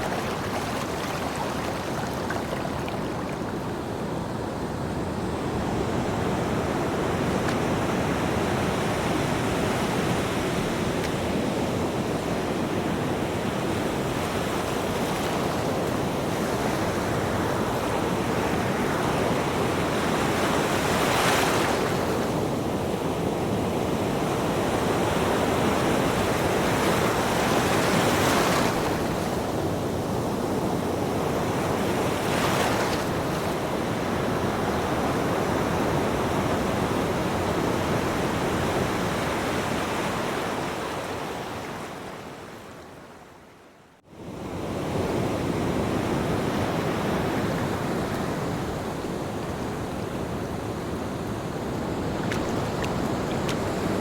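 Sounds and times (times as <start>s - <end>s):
ocean waves breaking: 0.0s - 4.6s, 45.5s - 54.0s.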